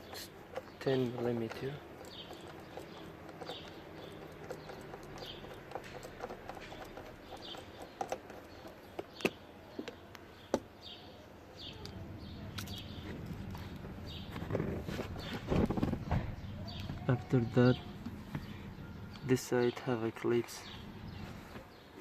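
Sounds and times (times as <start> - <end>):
hand tools clicking and knocking: 0.0 - 10.6
small bird chirping: 0.0 - 22.0.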